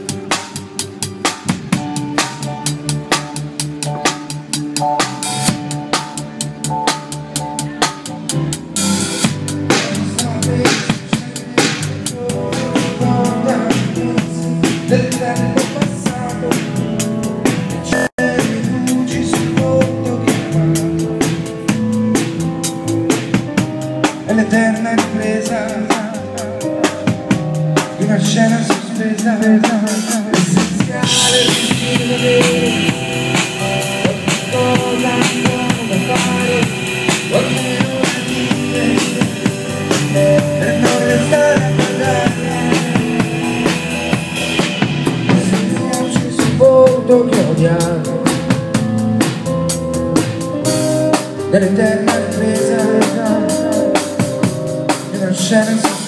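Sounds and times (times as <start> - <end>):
drum kit beat: 0.0 - 56.0
rock band playing instrumental: 0.0 - 56.0.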